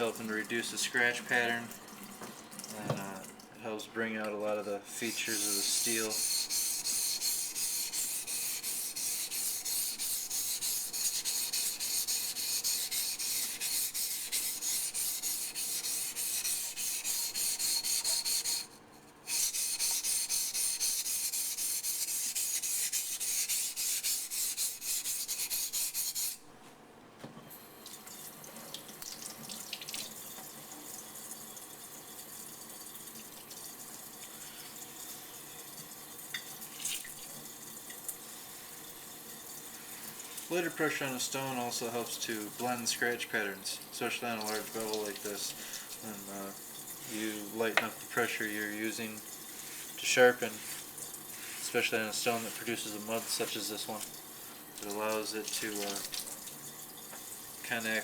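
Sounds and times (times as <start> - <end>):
water: 0.0 - 3.6, 27.8 - 58.0
knife blade rubbing on whetstone: 5.0 - 26.4.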